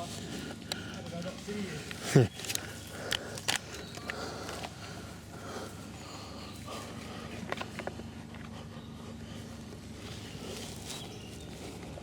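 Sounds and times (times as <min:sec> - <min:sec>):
rustling through leaf litter: 0:09.4 - 0:12.0.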